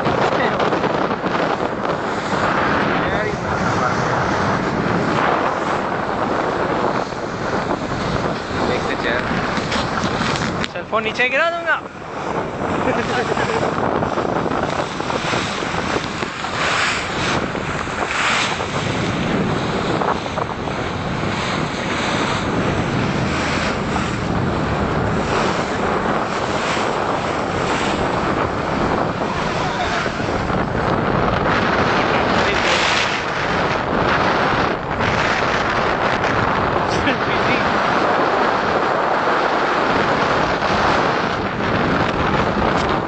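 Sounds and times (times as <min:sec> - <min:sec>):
water splashing along boat hull: 0:00.0 - 0:11.2, 0:11.8 - 0:43.0
wind buffeting microphone: 0:00.0 - 0:43.0.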